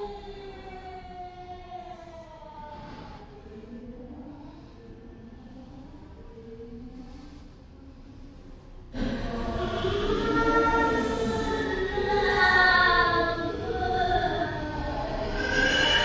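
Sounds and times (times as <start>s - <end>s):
eerie children's voices chorus: 9.0s - 16.0s.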